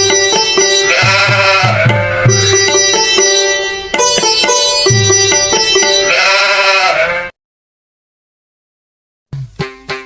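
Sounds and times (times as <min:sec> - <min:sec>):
plucked string music: 0:00.0 - 0:06.2, 0:09.4 - 0:10.0.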